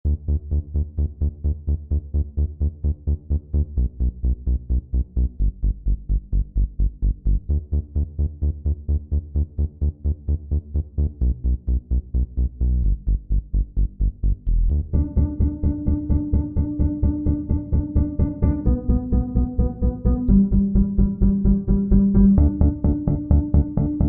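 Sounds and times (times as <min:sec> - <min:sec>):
electronic music with pulsing beat: 0:14.7 - 0:24.0.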